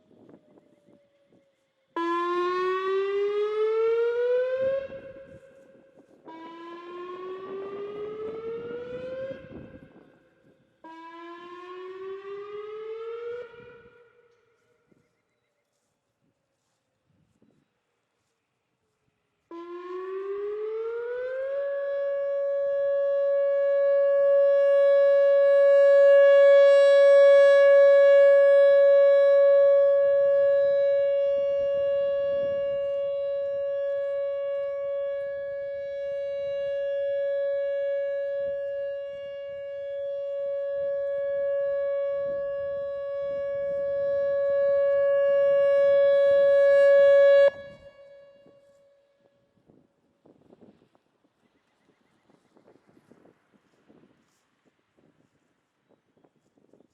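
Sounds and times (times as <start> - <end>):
warning siren steady tone: 0.0 - 56.9.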